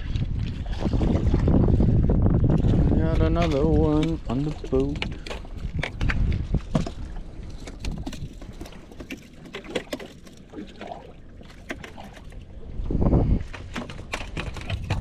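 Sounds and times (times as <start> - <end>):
clicks and knocks on boat deck: 13.5 - 15.0.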